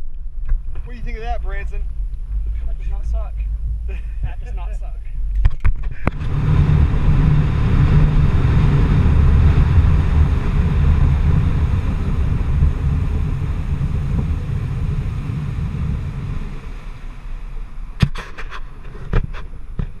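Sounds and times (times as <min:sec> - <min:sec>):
boat engine rumble: 0:00.0 - 0:20.0
rush of wind and water: 0:05.7 - 0:20.0
sharp knocks: 0:18.0 - 0:20.0.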